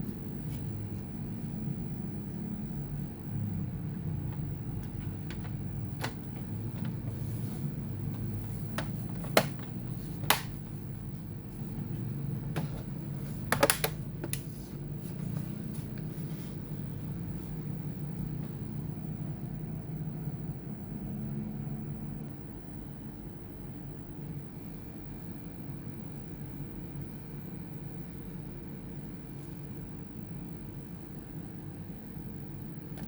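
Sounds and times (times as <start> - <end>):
steady low hum: 0.0 - 33.0
tools clicking on laptop internals: 8.1 - 10.7, 12.6 - 14.5.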